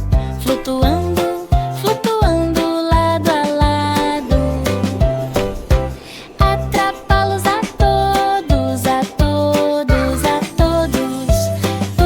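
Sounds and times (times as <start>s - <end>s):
children's song music: 0.0s - 12.0s.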